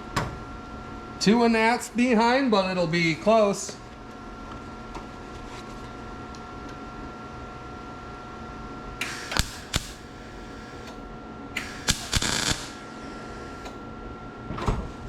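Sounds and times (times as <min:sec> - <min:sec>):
welder crackling bursts: 0:09.0 - 0:11.0, 0:11.6 - 0:13.7.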